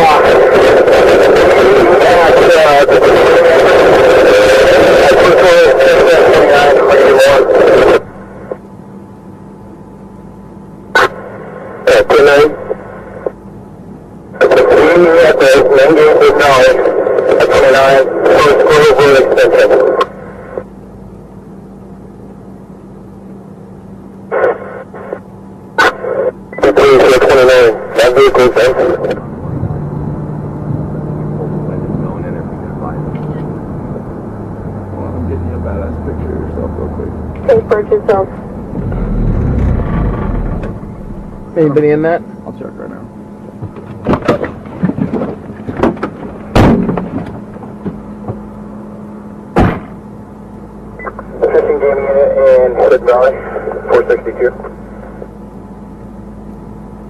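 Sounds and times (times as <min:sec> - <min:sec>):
steady low hum: 0:00.0 - 0:57.0
car cabin rumble and hum: 0:26.8 - 0:48.6
loud thud: 0:38.6 - 0:41.6, 0:45.8 - 0:47.2, 0:49.6 - 0:50.0
scattered knocks and crackles: 0:43.6 - 0:48.4.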